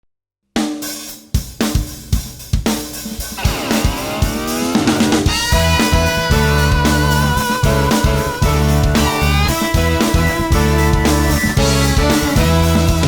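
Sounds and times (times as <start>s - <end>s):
drum hits with cymbals: 0.8s - 13.0s
sweeping pitch glide: 3.4s - 7.2s
held melodic tones: 3.4s - 13.0s.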